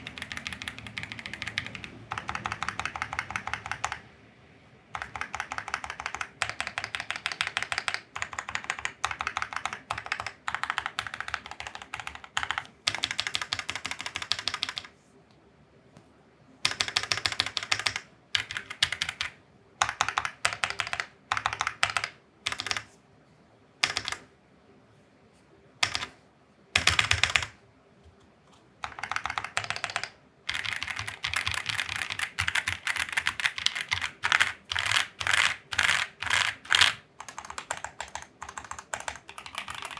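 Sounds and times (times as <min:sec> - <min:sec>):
mechanical keyboard typing: 0:00.0 - 0:04.0, 0:05.0 - 0:14.9, 0:16.6 - 0:22.9, 0:23.8 - 0:24.3, 0:25.8 - 0:26.2, 0:26.8 - 0:27.6, 0:28.8 - 0:39.9.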